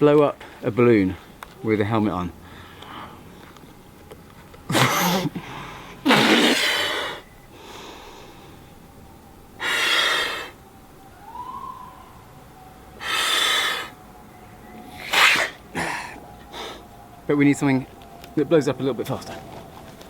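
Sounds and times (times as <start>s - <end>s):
intakes of breath: 2.4s - 3.6s, 5.3s - 6.0s, 6.6s - 8.8s, 13.0s - 14.0s, 15.0s - 16.9s
man blowing into balloon: 6.0s - 7.2s, 9.6s - 10.6s, 13.0s - 14.0s, 15.0s - 15.9s
sharp gasp: 13.0s - 14.0s.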